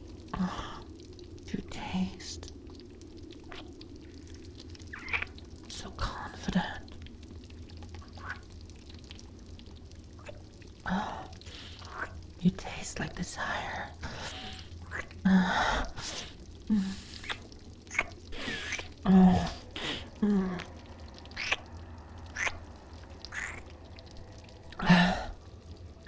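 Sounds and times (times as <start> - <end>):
soft humming: 0.0 - 26.0
woman's lip smacks and kisses: 17.1 - 18.9
breathy gasps: 18.3 - 20.8, 24.7 - 25.4.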